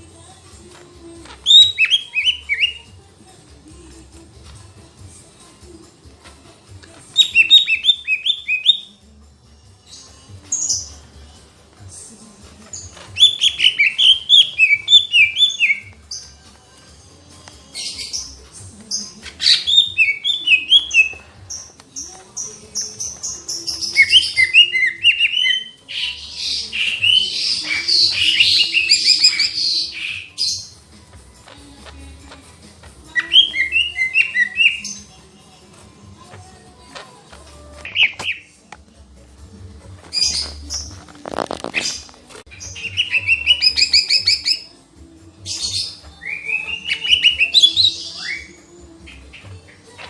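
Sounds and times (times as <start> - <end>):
bird singing chirps and trills: 1.2 - 3.0, 7.1 - 9.0, 12.7 - 16.4, 17.6 - 30.9, 31.6 - 35.3, 40.0 - 50.0.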